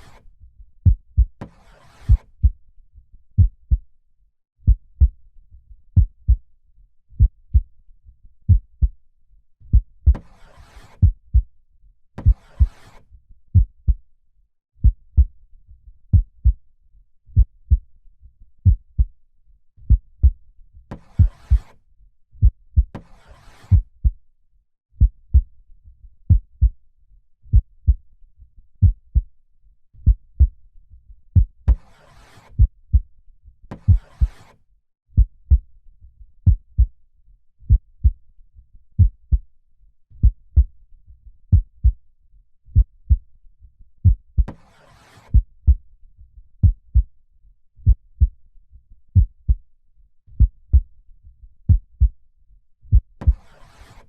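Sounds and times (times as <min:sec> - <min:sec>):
heartbeat thumps: 0:00.8 - 0:01.4, 0:03.4 - 0:03.8, 0:04.6 - 0:05.2, 0:06.0 - 0:06.4, 0:07.2 - 0:07.7, 0:08.5 - 0:09.0, 0:09.7 - 0:10.2, 0:11.0 - 0:11.5, 0:13.6 - 0:14.0, 0:14.8 - 0:15.3, 0:16.1 - 0:16.6, 0:17.4 - 0:17.8, 0:19.9 - 0:20.4, 0:25.0 - 0:25.5, 0:27.5 - 0:28.0, 0:28.8 - 0:29.2, 0:30.0 - 0:30.5, 0:33.8 - 0:34.3, 0:35.2 - 0:35.6, 0:36.4 - 0:36.9, 0:37.7 - 0:38.2, 0:39.0 - 0:39.4, 0:41.5 - 0:42.0, 0:42.8 - 0:43.2, 0:46.6 - 0:47.1, 0:47.8 - 0:48.3, 0:50.4 - 0:50.9, 0:51.7 - 0:52.1, 0:52.9 - 0:53.4.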